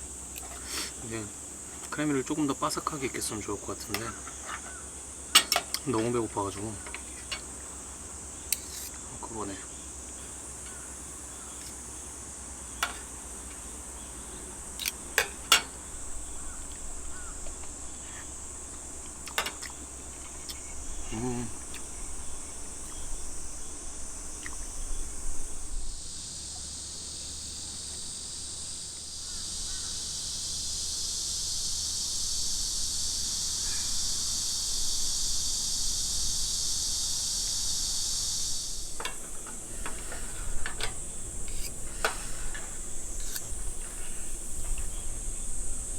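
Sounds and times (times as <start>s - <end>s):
high insect chorus: 0.0s - 45.9s
loud insect drone: 0.0s - 45.9s
cutlery clinking on a plate: 5.4s - 5.8s, 14.8s - 15.8s, 19.3s - 20.6s.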